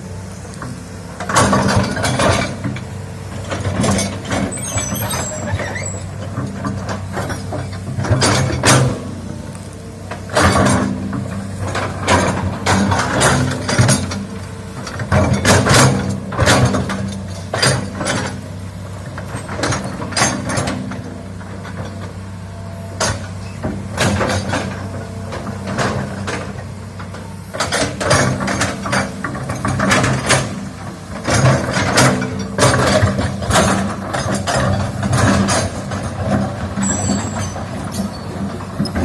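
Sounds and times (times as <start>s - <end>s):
excavator diesel engine running: 0.0s - 39.0s.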